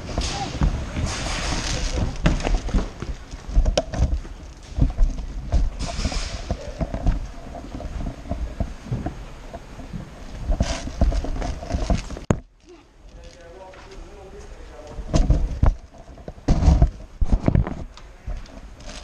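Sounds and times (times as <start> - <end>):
knocks thumps and clicks: 1.8 - 12.5.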